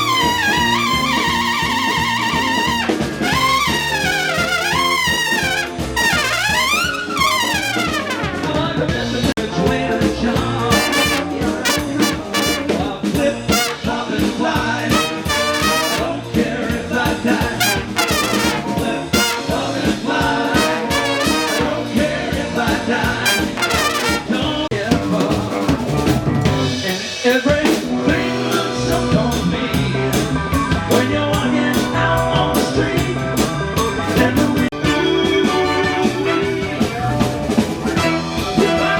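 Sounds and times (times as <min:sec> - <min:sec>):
brass horn section: 0:00.0 - 0:08.8, 0:10.7 - 0:14.2, 0:14.9 - 0:16.4, 0:17.5 - 0:22.2, 0:23.2 - 0:24.7, 0:34.7 - 0:36.9, 0:37.9 - 0:38.9
steady drum beat: 0:00.0 - 0:31.5.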